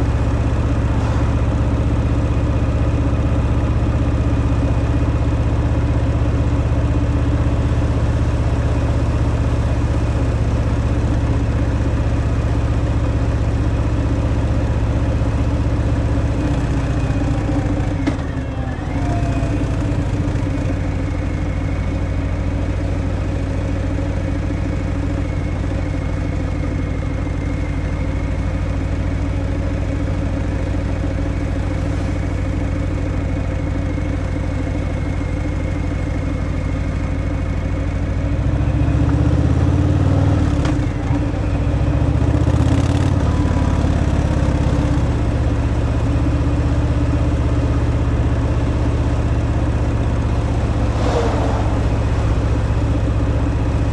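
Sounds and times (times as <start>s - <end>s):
motorcycle engine cruising: 38.0s - 53.9s.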